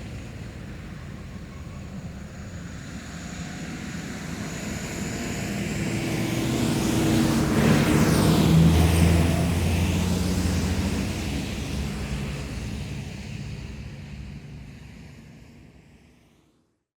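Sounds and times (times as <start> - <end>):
vehicle passing on road: 6.0 - 12.7.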